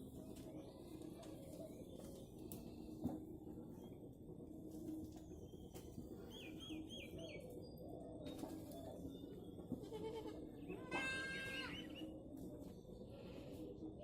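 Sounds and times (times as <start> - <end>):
goats bleating: 9.8 - 11.9.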